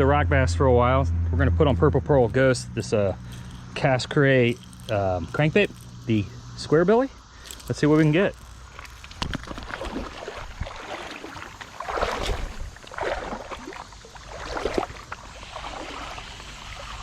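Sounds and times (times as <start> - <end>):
background water noise: 2.3 - 17.0
water splashing around wading legs: 7.5 - 17.0.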